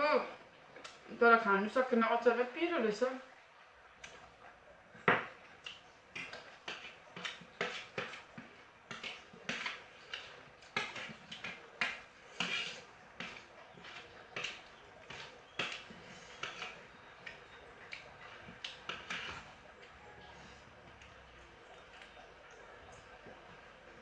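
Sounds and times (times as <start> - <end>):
chewing and lip-smacking: 12.7 - 24.0.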